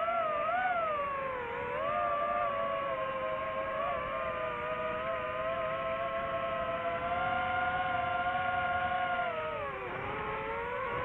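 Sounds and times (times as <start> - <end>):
drone propellers whining: 0.0 - 11.0.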